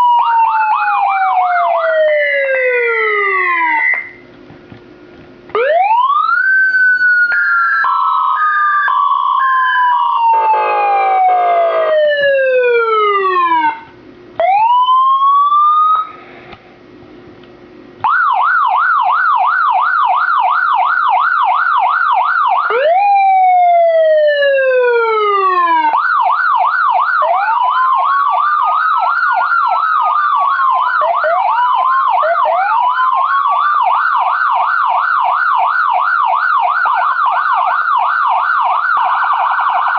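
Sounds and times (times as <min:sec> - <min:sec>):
electronic police siren: 0:00.0 - 0:04.3, 0:05.5 - 0:16.2, 0:18.0 - 0:39.9
buzzy horn: 0:10.3 - 0:11.0.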